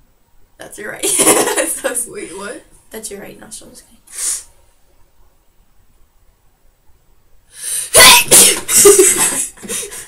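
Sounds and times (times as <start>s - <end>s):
person sniffing: 4.1s - 4.5s
breathy bursts: 7.5s - 8.0s
person sneezing: 7.8s - 9.8s.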